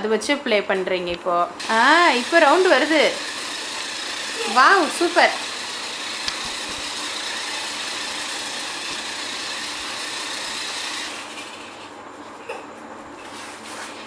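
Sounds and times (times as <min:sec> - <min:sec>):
toy truck motor whirring: 0:01.6 - 0:11.9.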